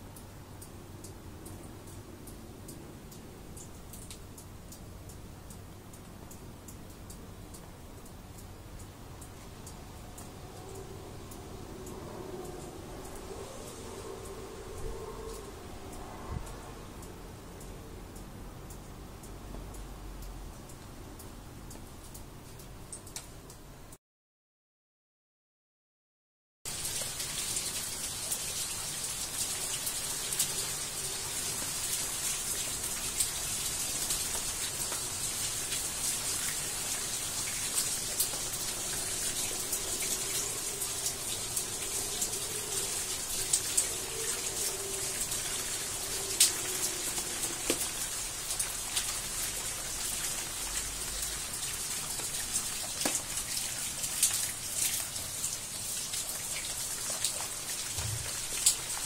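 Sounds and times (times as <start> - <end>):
raindrops ticking on surfaces: 0.0 - 24.0, 26.7 - 59.0
faint wavering hum: 8.4 - 20.2
heavy rain pouring: 8.6 - 18.5, 26.7 - 59.0.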